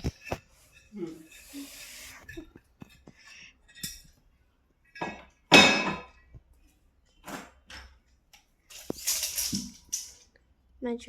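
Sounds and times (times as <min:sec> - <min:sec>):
hard objects knocking: 0:00.0 - 0:00.5.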